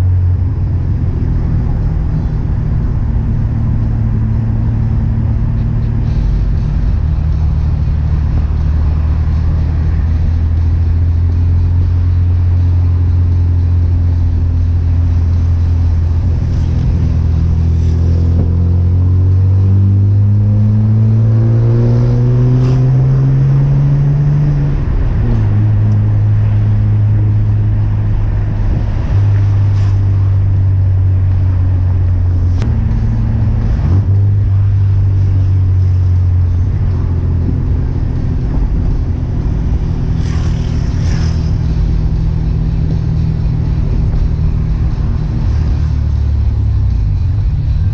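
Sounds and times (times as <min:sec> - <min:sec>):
car engine revving while driving: 0:00.0 - 0:47.9.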